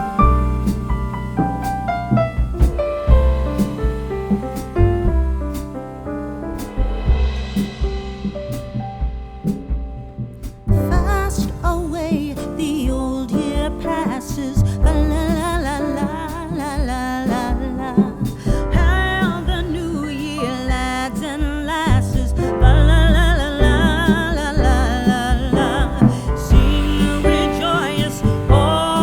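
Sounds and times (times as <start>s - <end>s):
song with vocals and bass beat: 10.7s - 29.0s.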